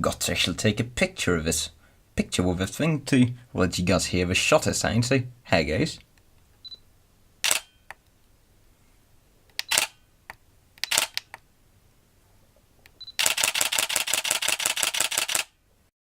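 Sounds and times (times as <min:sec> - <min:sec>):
camera shutter clicks: 0:07.4 - 0:08.0, 0:09.5 - 0:10.0, 0:10.8 - 0:11.4, 0:13.2 - 0:15.6.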